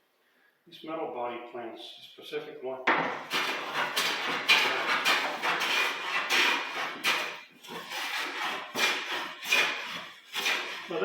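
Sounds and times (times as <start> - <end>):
hand plane shaving wood: 3.3 - 11.0.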